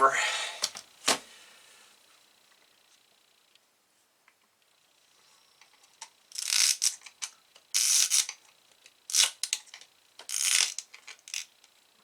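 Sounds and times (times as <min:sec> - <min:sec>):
screwdriver scraping chip socket: 0:06.3 - 0:08.4, 0:09.1 - 0:09.6, 0:10.2 - 0:11.5.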